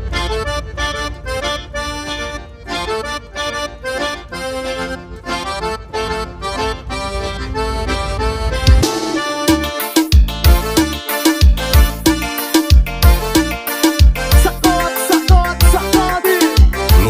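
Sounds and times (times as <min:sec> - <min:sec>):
accordion melody: 0:00.0 - 0:17.0
heavy bass dance beat: 0:08.7 - 0:17.0.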